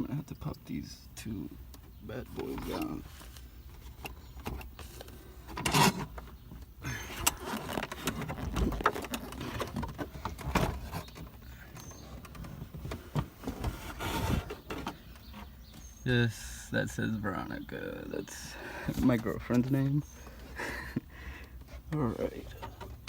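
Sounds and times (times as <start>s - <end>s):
plastic rustling and scraping: 2.3s - 16.0s
sharp plastic clicks and knocks: 3.8s - 15.9s.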